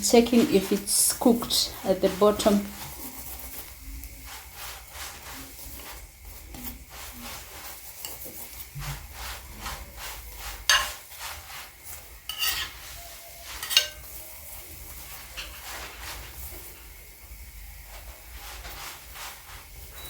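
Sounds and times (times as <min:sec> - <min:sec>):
scraping in a pan: 0:00.0 - 0:17.0, 0:17.8 - 0:20.0
flatbread sizzling in oil: 0:00.0 - 0:20.0.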